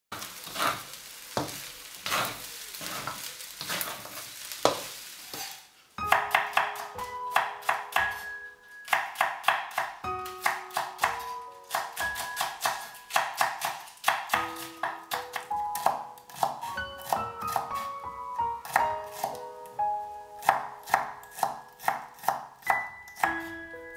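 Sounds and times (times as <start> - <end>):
food sizzling in a pan: 0.1 - 10.0, 17.5 - 22.6
plucked piano-like melody: 6.0 - 13.2, 14.3 - 23.9.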